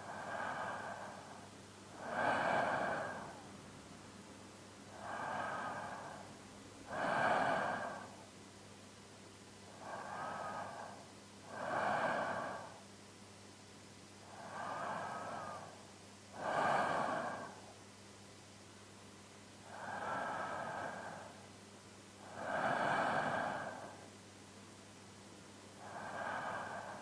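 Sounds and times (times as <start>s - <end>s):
man breathing in sleep: 0.0s - 3.5s, 4.9s - 8.3s, 9.7s - 12.9s, 14.2s - 17.8s, 19.6s - 21.5s, 22.2s - 24.1s, 25.8s - 27.0s.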